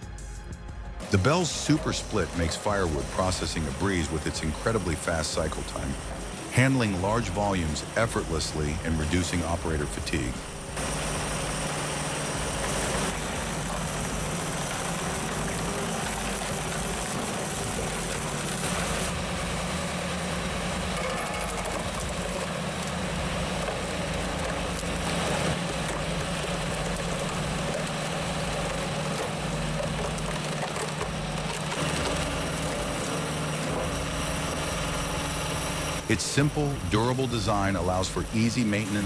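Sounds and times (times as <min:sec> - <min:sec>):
wood splitter engine humming: 0:00.0 - 0:39.0
wood crunching and cracking: 0:20.8 - 0:34.6.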